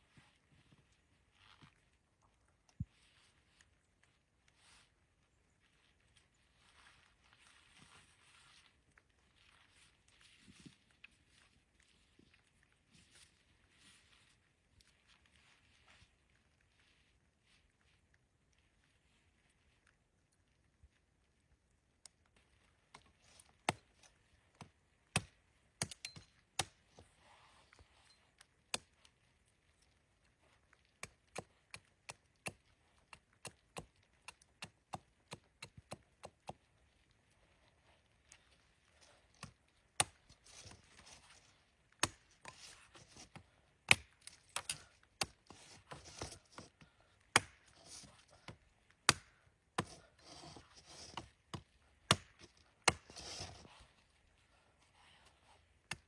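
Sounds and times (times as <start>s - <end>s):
soft rustling: 0.0s - 32.0s, 36.5s - 49.1s, 49.8s - 55.9s.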